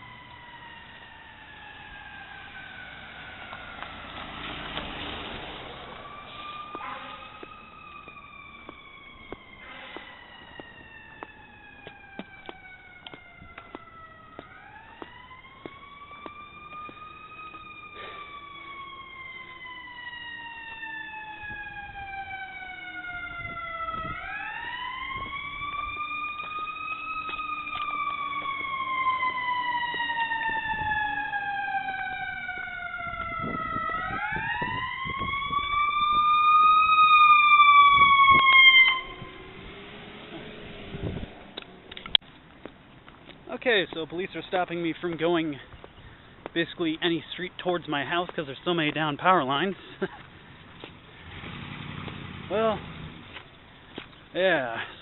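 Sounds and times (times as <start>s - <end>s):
siren wailing: 0.0s - 42.2s.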